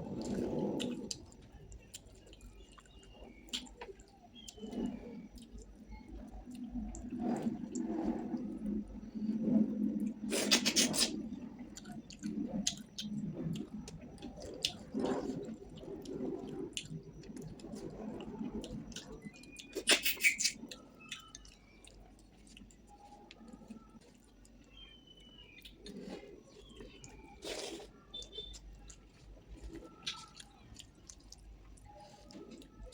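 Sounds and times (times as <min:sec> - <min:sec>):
person chewing wetly: 0:00.0 - 0:08.8, 0:10.0 - 0:32.9
lip smacks: 0:10.3 - 0:11.1, 0:19.0 - 0:21.4.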